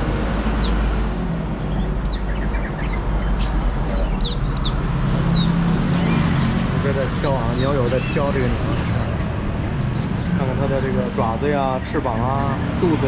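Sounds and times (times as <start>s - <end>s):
road traffic rumble: 0.0s - 13.0s
small songbirds chirping: 0.0s - 13.0s.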